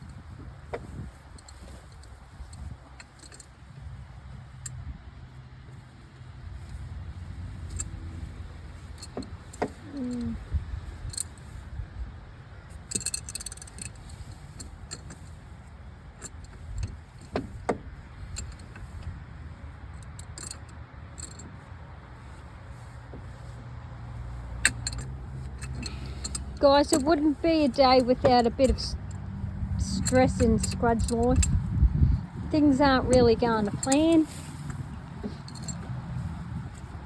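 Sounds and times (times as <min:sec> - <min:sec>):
metal jangling: 0:12.8 - 0:15.4, 0:20.0 - 0:21.5, 0:24.6 - 0:31.7, 0:32.5 - 0:37.0
metallic clinks of tools: 0:24.6 - 0:29.2, 0:29.8 - 0:31.6, 0:32.8 - 0:37.0.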